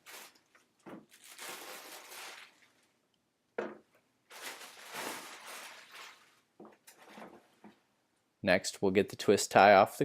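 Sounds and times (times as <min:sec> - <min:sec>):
packaging rustling: 0:00.0 - 0:03.0, 0:04.3 - 0:06.5.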